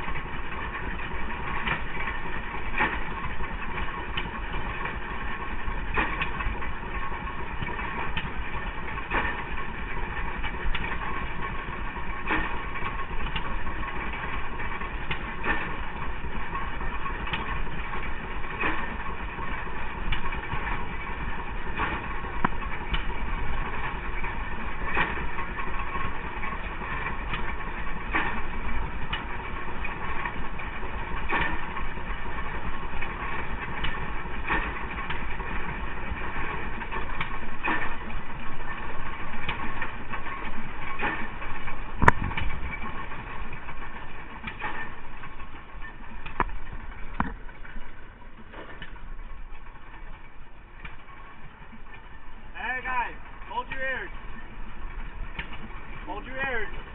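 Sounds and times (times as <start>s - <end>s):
farm engine running: 0.0s - 56.9s.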